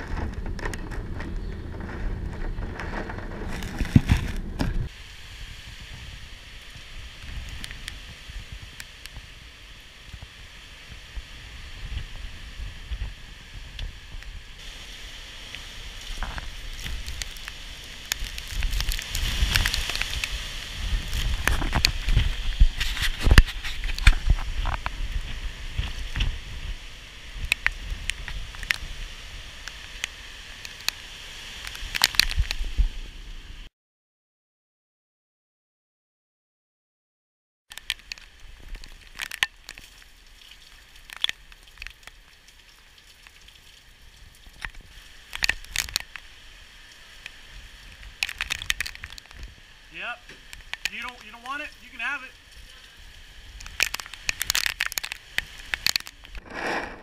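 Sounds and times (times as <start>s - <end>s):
wind buffeting microphone: 0.0s - 14.6s, 15.8s - 29.6s
hurricane wind: 0.0s - 33.7s, 43.3s - 57.0s
rain: 0.0s - 33.7s, 37.7s - 57.0s.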